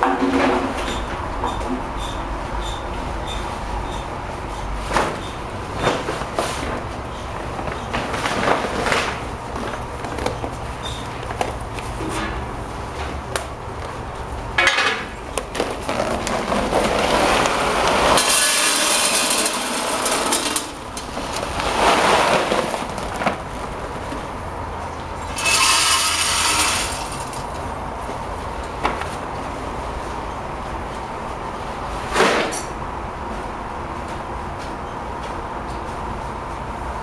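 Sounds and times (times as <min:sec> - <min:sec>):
knocks clicks and scraping: 0:14.6 - 0:24.3, 0:25.2 - 0:27.7.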